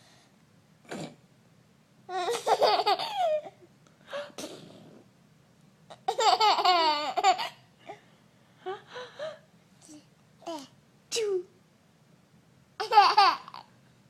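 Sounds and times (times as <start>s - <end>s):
baby giggling: 2.1s - 3.6s, 6.0s - 7.6s, 12.8s - 13.7s.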